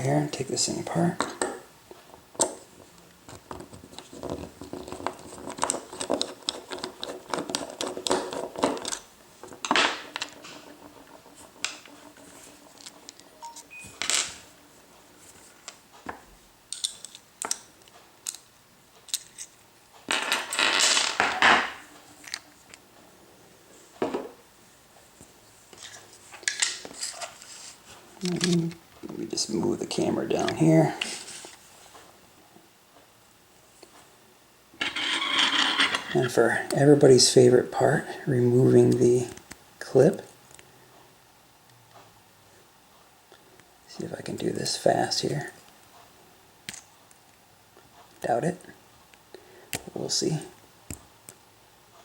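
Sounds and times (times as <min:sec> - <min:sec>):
rustling scrape: 0:10.0 - 0:13.5, 0:25.8 - 0:28.1, 0:31.0 - 0:32.0, 0:34.8 - 0:36.7
small metal parts clinking: 0:34.8 - 0:36.4.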